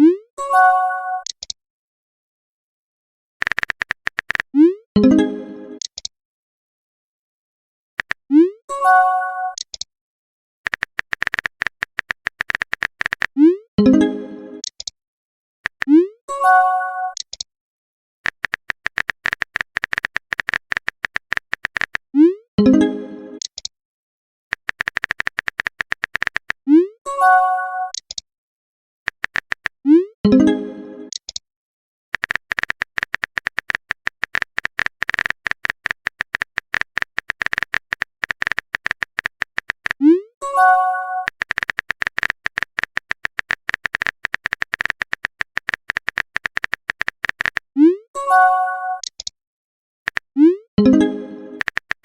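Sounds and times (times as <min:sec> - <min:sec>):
rapid typing clicks: 0:03.4 - 0:04.5, 0:08.0 - 0:08.2, 0:10.7 - 0:13.4, 0:18.2 - 0:22.1, 0:24.5 - 0:26.6, 0:29.1 - 0:29.8, 0:32.2 - 0:40.0, 0:41.2 - 0:47.7, 0:50.1 - 0:50.3, 0:51.6 - 0:52.0
message chime: 0:50.8 - 0:51.6.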